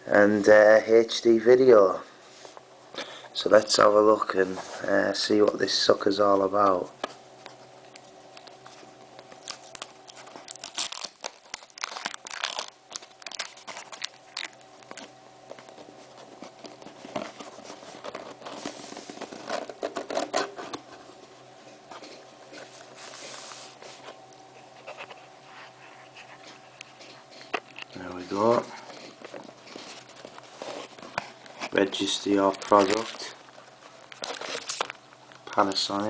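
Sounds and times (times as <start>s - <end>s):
faint steady hum: 0.0s - 36.0s
cardboard and paper rustling: 8.6s - 21.2s, 21.9s - 35.0s.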